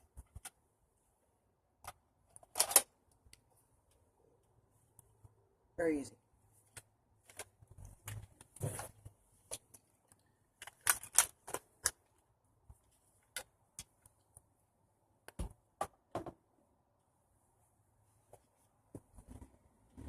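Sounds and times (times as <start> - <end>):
hard plastic clicks and clacks: 9.5 - 12.1.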